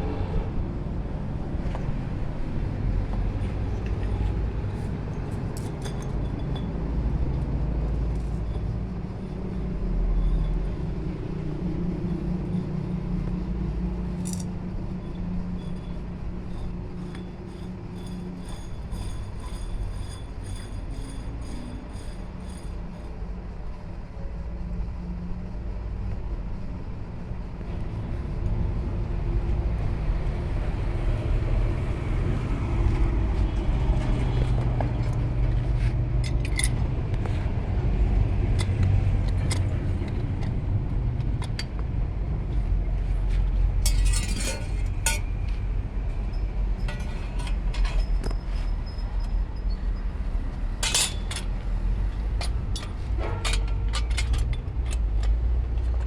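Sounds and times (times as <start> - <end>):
metal tools clinking: 14.2 - 14.5, 43.8 - 45.3, 46.8 - 48.1, 50.8 - 51.6.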